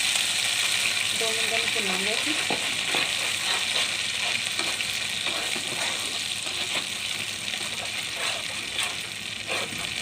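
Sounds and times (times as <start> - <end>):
paste sizzling in a pan: 0.0 - 10.0
spoon scraping a pan: 2.2 - 10.0.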